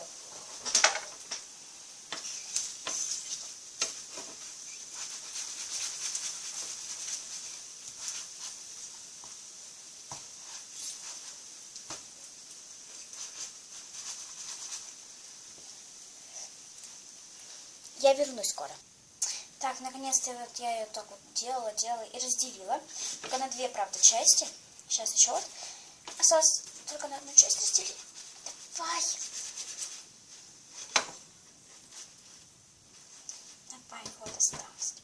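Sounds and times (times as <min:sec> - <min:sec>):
egg sizzling in frying pan: 0:00.0 - 0:18.0.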